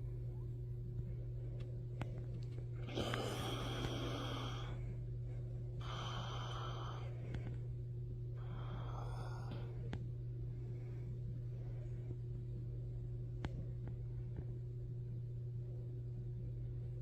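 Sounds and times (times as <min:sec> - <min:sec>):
steady low hum: 0:00.0 - 0:17.0
man snoring: 0:02.8 - 0:04.7.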